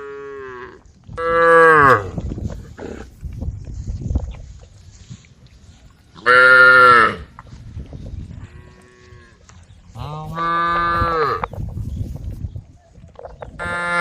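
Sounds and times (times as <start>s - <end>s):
cows mooing: 0.0s - 2.2s, 6.2s - 7.3s, 10.0s - 11.6s, 13.6s - 14.0s.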